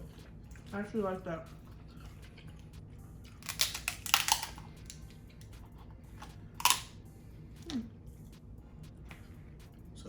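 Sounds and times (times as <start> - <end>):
crab shell crackling: 3.4 - 5.5.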